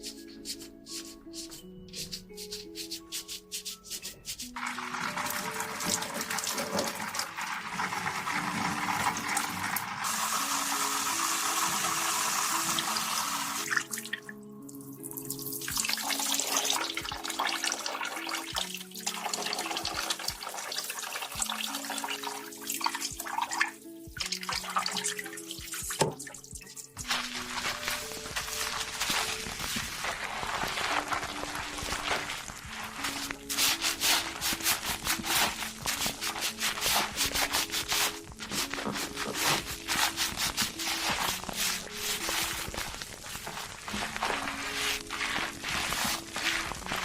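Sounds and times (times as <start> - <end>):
soft background music: 0.0 - 47.0
water running: 0.0 - 47.0
wet handling sounds: 13.6 - 47.0.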